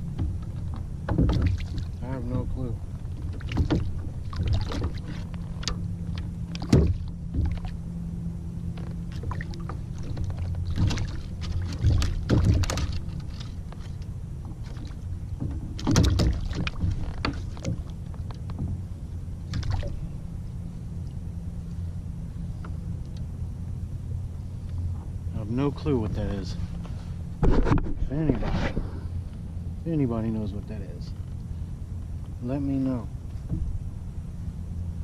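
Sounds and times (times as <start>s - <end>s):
water splashes: 0.0s - 7.8s, 8.7s - 20.2s
steady low rumble: 0.0s - 35.0s
knocks against kayak hull: 0.1s - 1.8s, 6.5s - 7.7s, 10.7s - 13.0s, 15.4s - 17.8s, 33.4s - 33.8s.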